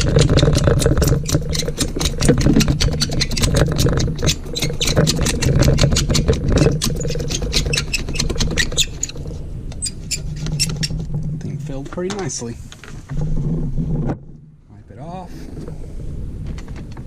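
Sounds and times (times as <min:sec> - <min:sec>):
razor blade scraping glass: 0:00.0 - 0:09.2
steady low hum: 0:00.0 - 0:17.0.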